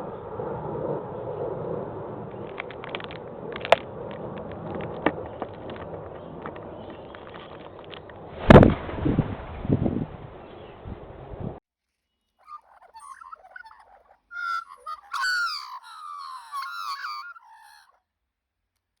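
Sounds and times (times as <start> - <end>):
bird warbling calls: 12.4 - 18.0.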